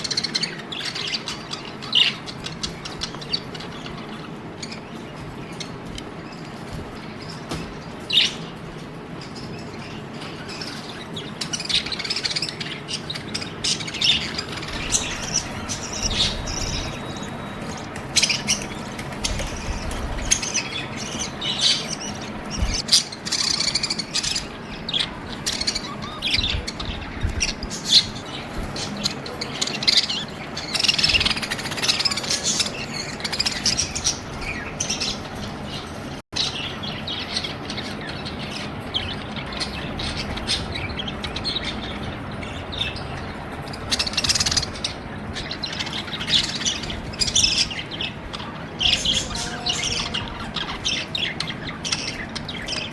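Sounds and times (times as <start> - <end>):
budgerigars chirping: 0.0 - 52.9.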